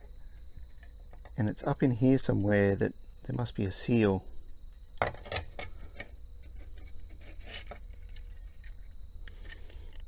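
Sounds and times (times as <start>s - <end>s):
clicks and rubbing of plastic housing: 0.0s - 1.4s, 4.8s - 10.0s.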